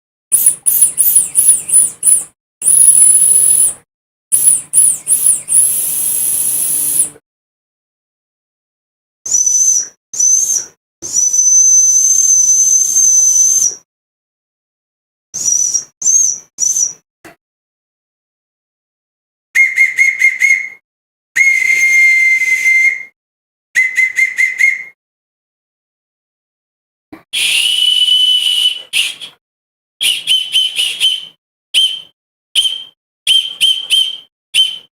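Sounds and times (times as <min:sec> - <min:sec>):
dog whistle blasts: 0:00.3 - 0:07.2, 0:21.4 - 0:23.1, 0:23.8 - 0:25.0, 0:27.4 - 0:29.3, 0:30.0 - 0:34.9.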